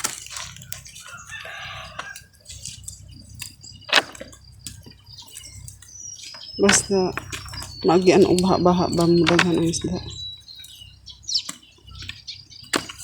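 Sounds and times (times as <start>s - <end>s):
rooster crowing: 0.8s - 2.5s.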